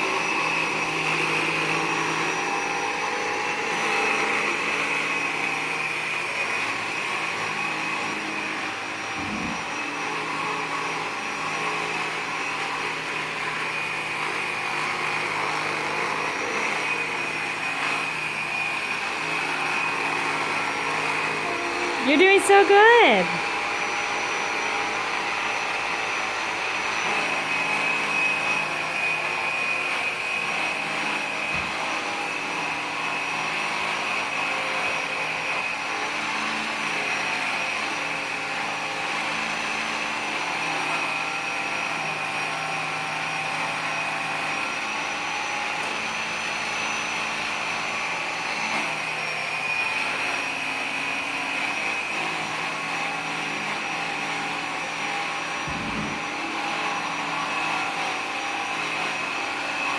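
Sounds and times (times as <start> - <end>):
vacuum cleaner running: 0.0 - 59.9.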